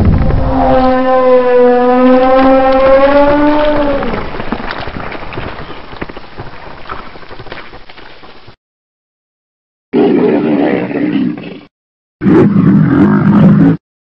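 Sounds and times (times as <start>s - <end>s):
monster roar: 0.0s - 4.2s.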